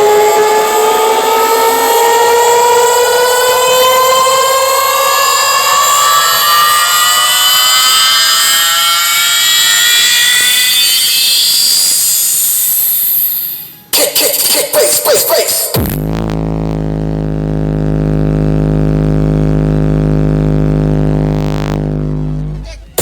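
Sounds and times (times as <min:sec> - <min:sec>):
rising electronic tone: 0:00.0 - 0:23.0.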